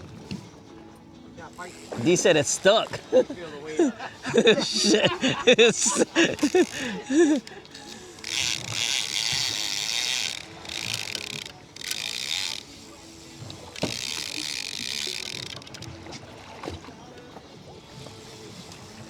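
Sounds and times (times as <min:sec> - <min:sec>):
fishing reel whirring: 0:01.1 - 0:16.8, 0:17.8 - 0:19.0.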